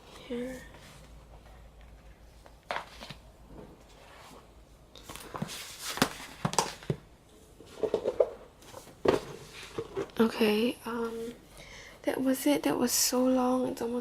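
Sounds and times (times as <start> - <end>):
paper rustling: 5.0 - 7.0.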